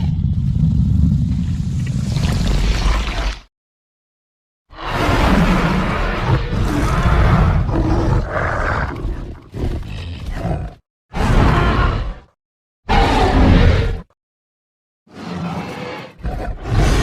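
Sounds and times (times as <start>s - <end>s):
creature roar-growl: 4.8s - 14.1s, 15.2s - 17.0s.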